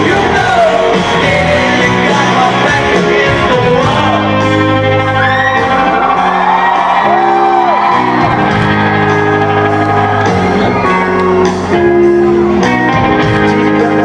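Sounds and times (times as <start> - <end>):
electric guitar bending notes: 0.0 - 14.0
live rock band playing: 0.0 - 14.0
crowd shouting and whooping: 3.5 - 14.0.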